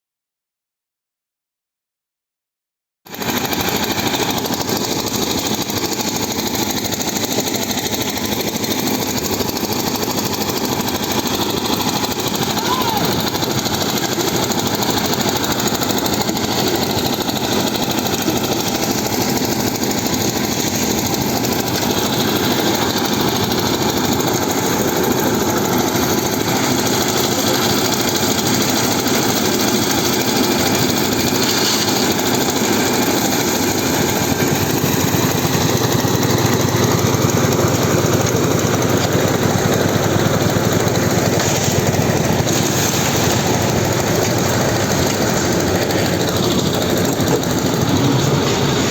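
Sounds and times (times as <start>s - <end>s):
concrete mixer engine rattling: 3.1s - 48.9s.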